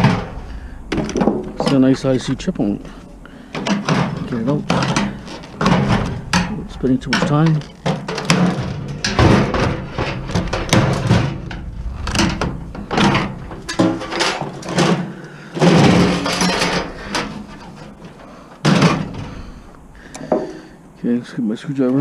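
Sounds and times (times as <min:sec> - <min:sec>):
parts clattering: 0:00.0 - 0:20.9
plastic and metal parts breaking: 0:03.5 - 0:12.0.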